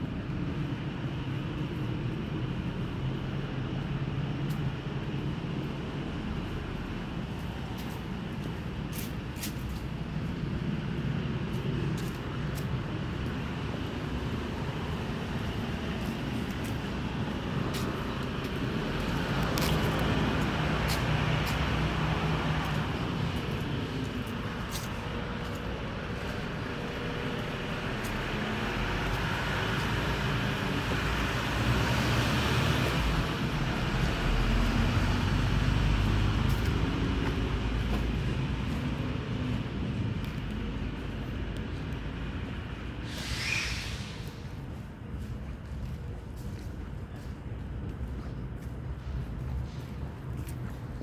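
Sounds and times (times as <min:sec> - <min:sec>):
road traffic rumble: 0:00.0 - 0:51.0.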